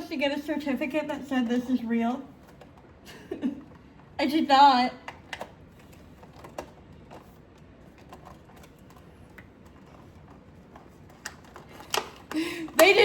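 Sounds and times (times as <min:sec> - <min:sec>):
packaging rustling and clicking: 0:05.1 - 0:13.0.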